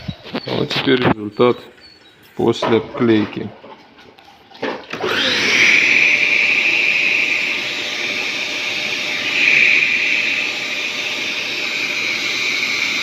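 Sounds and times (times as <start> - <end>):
vacuum cleaner running: 4.9 - 13.0.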